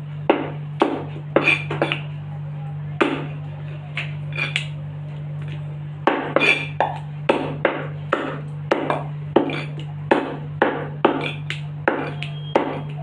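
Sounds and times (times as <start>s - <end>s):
constant low hum: 0.0s - 13.0s
cleaver chopping on chopping block: 0.3s - 2.1s, 3.0s - 3.4s, 6.1s - 13.0s.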